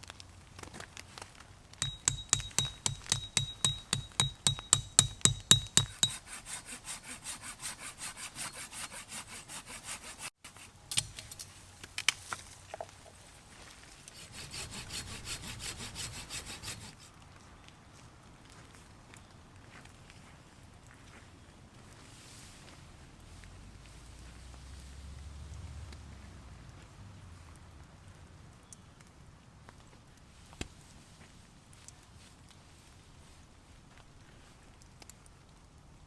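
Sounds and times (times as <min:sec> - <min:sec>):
hand saw cutting wood: 0:01.8 - 0:11.4, 0:14.0 - 0:17.1.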